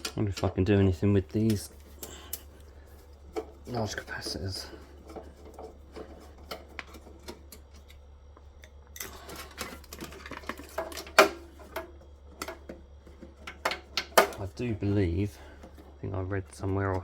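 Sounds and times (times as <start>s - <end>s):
tools and metal parts clicking: 9.0s - 12.7s.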